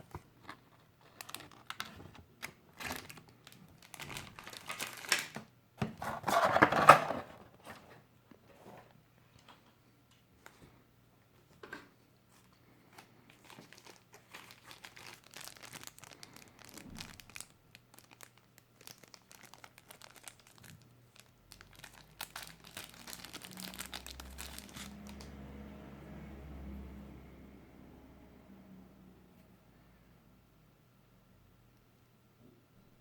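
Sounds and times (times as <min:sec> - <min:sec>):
packaging crinkling and rustling: 0:00.0 - 0:09.7, 0:12.3 - 0:25.3.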